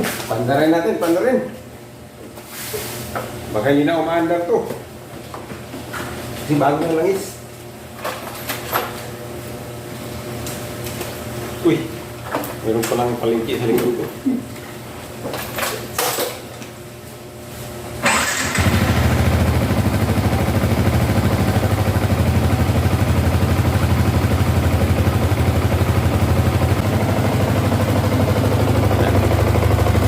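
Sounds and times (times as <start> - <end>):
motorcycle engine starting and idling: 18.0 - 30.0.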